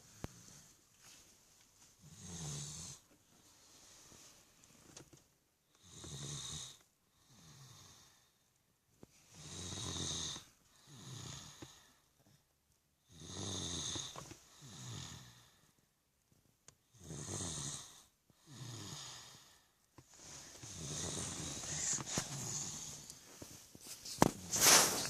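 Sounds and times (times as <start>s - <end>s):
soft breath: 0.0s - 1.9s, 3.3s - 4.6s, 18.3s - 25.0s
loud snoring: 2.0s - 3.1s, 5.8s - 8.2s, 9.4s - 11.8s, 13.1s - 15.6s, 16.9s - 19.5s, 20.6s - 23.1s.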